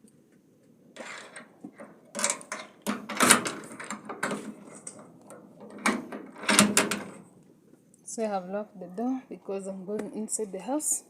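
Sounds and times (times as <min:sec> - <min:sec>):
door shutting and locking: 0:02.2 - 0:04.6, 0:05.6 - 0:07.2.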